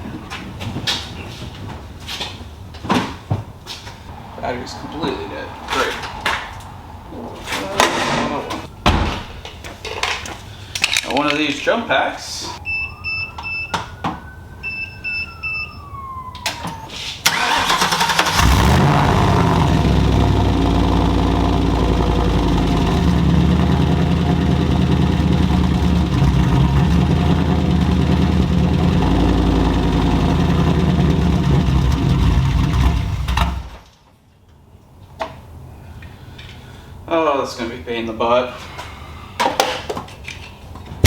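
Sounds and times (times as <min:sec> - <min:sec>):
engine cranking: 0:17.2 - 0:20.6, 0:22.0 - 0:33.8
engine running: 0:17.3 - 0:33.8.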